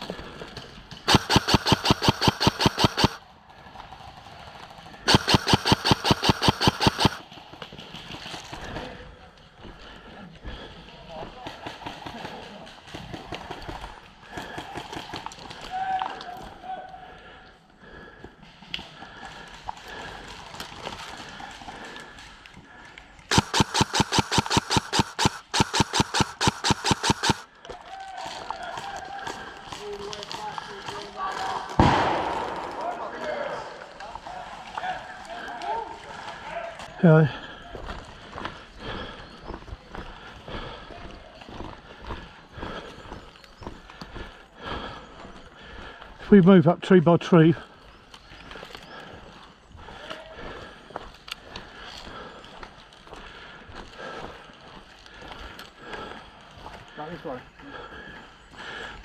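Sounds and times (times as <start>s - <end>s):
airsoft gun full-auto bursts: 1.1s - 3.2s, 5.1s - 7.2s, 23.3s - 27.5s.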